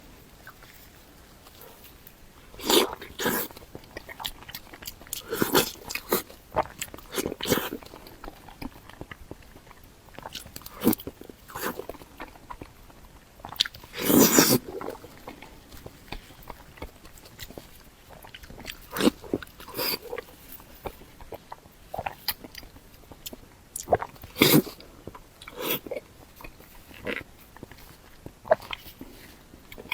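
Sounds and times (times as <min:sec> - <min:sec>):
person biting and chewing food: 0:00.4 - 0:29.9.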